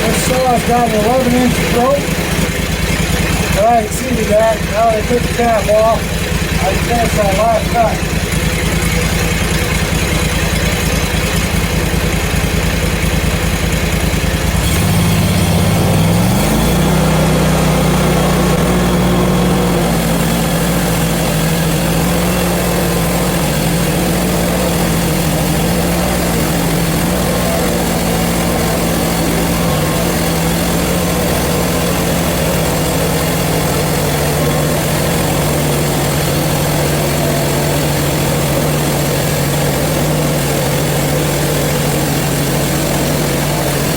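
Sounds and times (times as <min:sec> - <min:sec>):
band saw cutting through log: 0:00.0 - 0:43.9
sawmill engine running: 0:00.0 - 0:43.9.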